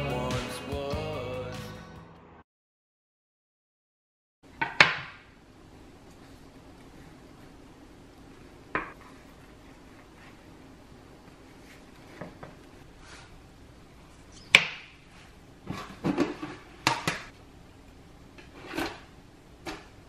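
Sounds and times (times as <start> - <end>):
objects knocking and clattering: 15.6 - 17.3.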